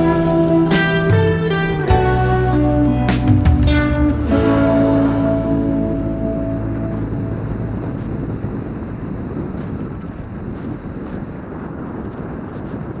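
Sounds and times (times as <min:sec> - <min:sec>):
background music: 0:00.0 - 0:08.3
motorcycle engine and road noise: 0:00.0 - 0:13.0
wind rushing over microphone: 0:00.0 - 0:13.0.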